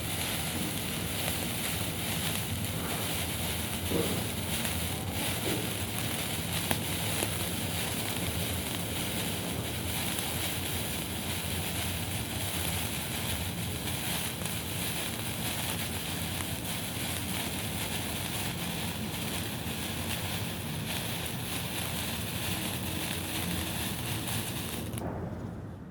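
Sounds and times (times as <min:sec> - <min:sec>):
signal flare hissing: 0:00.0 - 0:25.0
sharp pop: 0:03.8 - 0:05.7.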